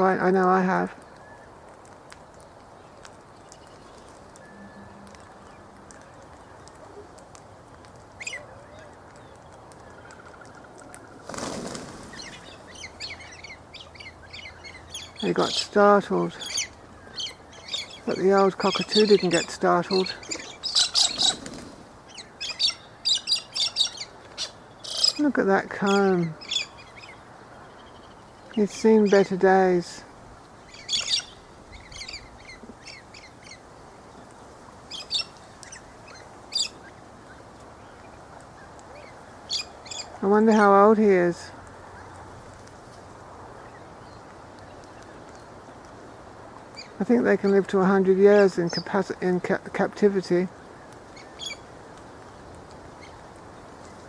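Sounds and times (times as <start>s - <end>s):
rush of wingbeats: 10.3s - 12.7s, 19.2s - 22.0s
birds chirping high-pitched: 12.0s - 29.9s, 30.6s - 34.2s, 34.9s - 42.2s, 50.3s - 51.8s.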